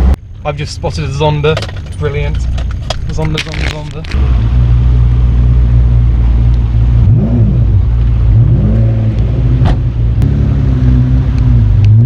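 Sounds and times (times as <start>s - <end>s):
low engine drone: 3.3s - 12.0s
engine revving: 4.0s - 12.0s.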